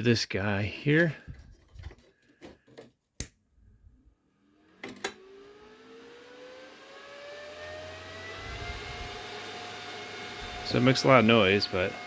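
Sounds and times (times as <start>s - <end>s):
electric fan whine spinning up: 4.3s - 12.0s.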